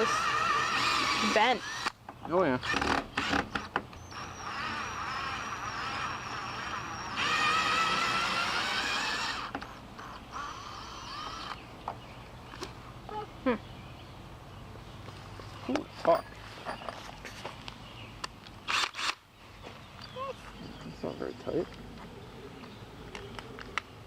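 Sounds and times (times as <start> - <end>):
power drill motor whining: 0.0 - 2.0, 2.6 - 11.6.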